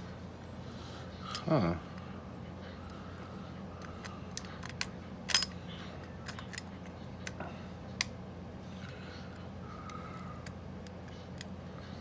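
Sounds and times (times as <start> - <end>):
lock pick clicking in padlock: 4.3 - 5.6.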